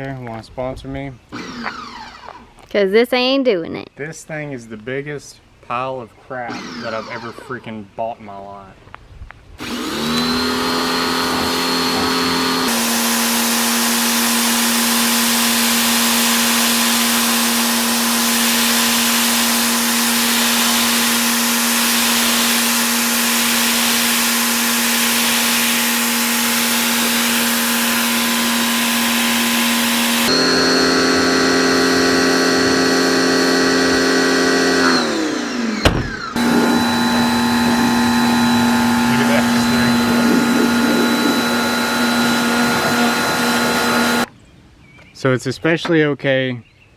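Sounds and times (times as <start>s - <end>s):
pressure washer motor humming: 6.5s - 7.4s, 9.6s - 44.3s
water spray hissing: 12.7s - 30.3s.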